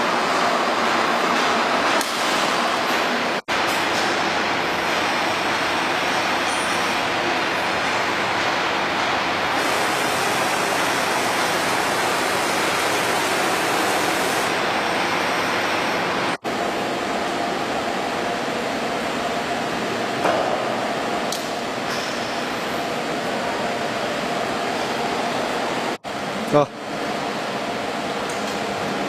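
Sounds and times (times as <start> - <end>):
hissing machinery noise: 2.8 - 19.9.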